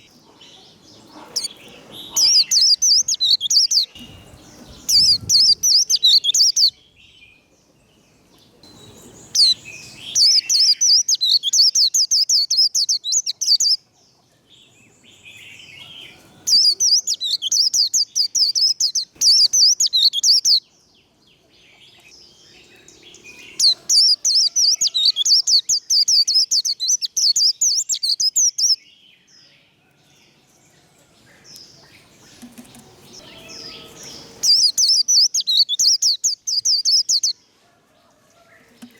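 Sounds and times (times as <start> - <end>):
soft bird calls: 0.0 - 6.8, 31.4 - 37.4
bird twittering song: 0.0 - 29.8, 31.3 - 37.4.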